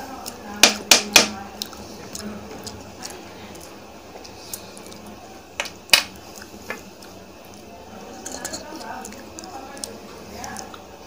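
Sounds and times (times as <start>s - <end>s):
low background noise: 0.0s - 11.0s.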